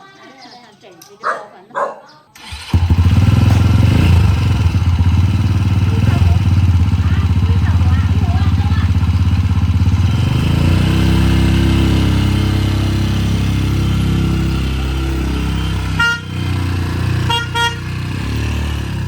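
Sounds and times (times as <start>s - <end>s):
vehicle engine running: 2.4s - 19.0s
car horn beeps: 15.2s - 18.0s.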